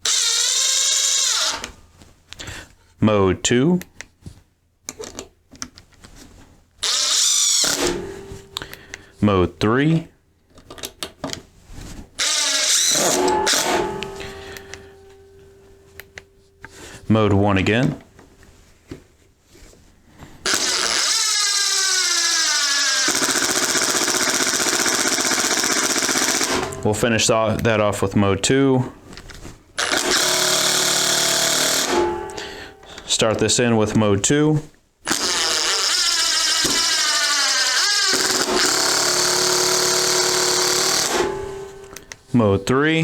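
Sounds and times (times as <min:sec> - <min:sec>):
impact driver hammer rattle: 0:00.0 - 0:01.8, 0:06.8 - 0:09.2, 0:12.2 - 0:18.1, 0:20.5 - 0:27.8, 0:29.8 - 0:33.6, 0:35.1 - 0:42.2
impact driver motor whine: 0:00.0 - 0:01.8, 0:06.8 - 0:08.7, 0:12.2 - 0:14.7, 0:20.5 - 0:26.8, 0:29.8 - 0:32.4, 0:35.1 - 0:41.9.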